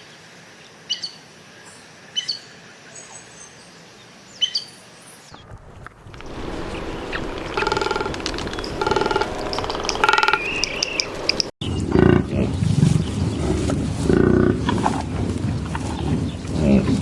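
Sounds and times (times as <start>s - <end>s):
animal calls: 5.3s - 11.5s
lion calling: 5.3s - 11.5s.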